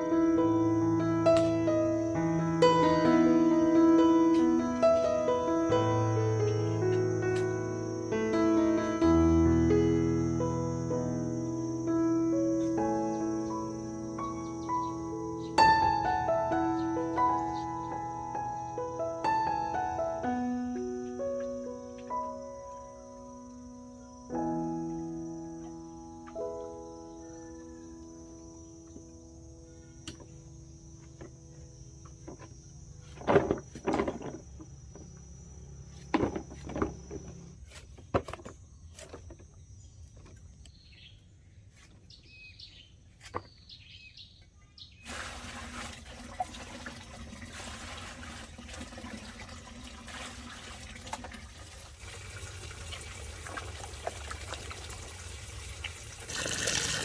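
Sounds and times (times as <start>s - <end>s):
insect drone: 0.0s - 42.9s, 43.8s - 57.0s
bird chirps: 11.5s - 19.0s, 38.7s - 45.1s
running water rushing: 45.0s - 57.0s.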